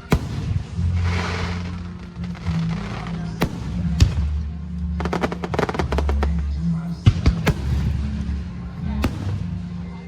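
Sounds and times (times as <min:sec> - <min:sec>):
rapid firework cracks: 0:00.0 - 0:01.9, 0:07.3 - 0:08.0
firework bangs: 0:00.0 - 0:04.4, 0:07.1 - 0:08.4, 0:09.0 - 0:09.7.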